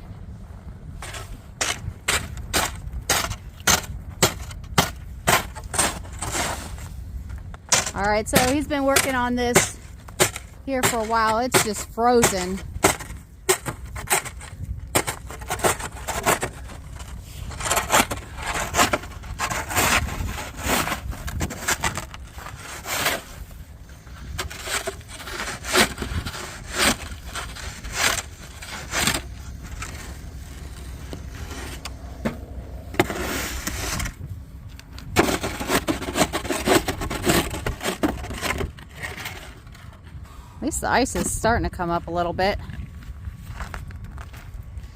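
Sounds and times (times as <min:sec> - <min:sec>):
tool chipping and scraping ice: 0:01.0 - 0:07.0, 0:07.7 - 0:31.9, 0:35.1 - 0:39.9.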